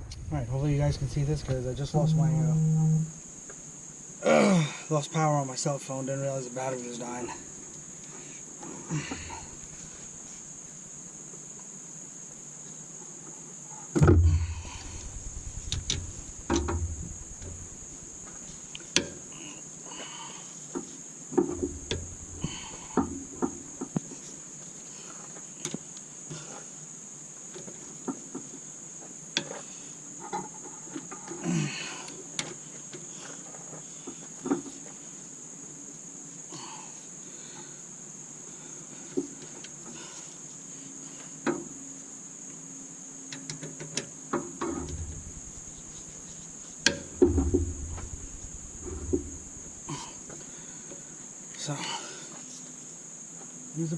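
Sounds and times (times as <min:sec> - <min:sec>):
crickets chirping: 0:00.0 - 0:53.9
loud thump: 0:14.0 - 0:18.1, 0:21.4 - 0:23.3, 0:44.6 - 0:46.2, 0:46.9 - 0:50.2.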